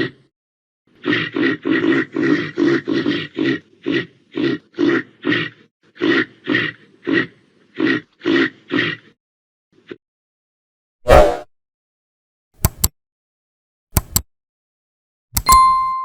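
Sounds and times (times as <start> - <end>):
reindeer grunting: 0.9 - 9.2.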